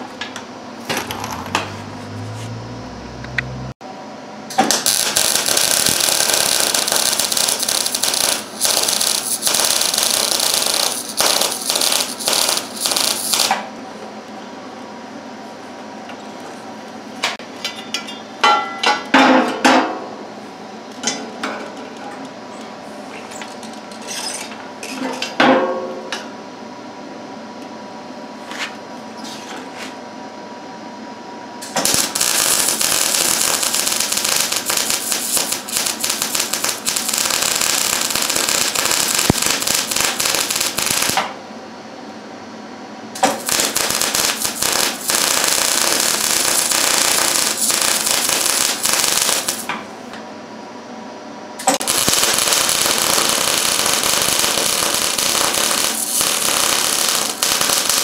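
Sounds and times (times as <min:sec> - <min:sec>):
arc welder crackling: 0:00.0 - 0:03.7, 0:04.5 - 0:13.7, 0:31.6 - 0:41.4, 0:43.2 - 0:50.2, 0:51.6 - 0:58.0.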